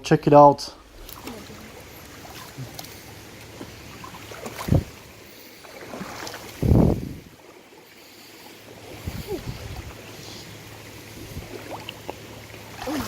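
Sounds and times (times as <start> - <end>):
wind buffeting microphone: 0.8 - 5.2, 6.1 - 7.4, 8.8 - 11.8
river water rushing over rocks: 0.8 - 13.0.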